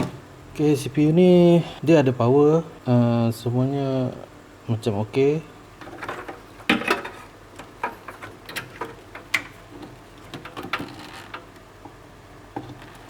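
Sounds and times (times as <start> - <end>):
hard objects clicking and knocking: 5.8 - 13.0.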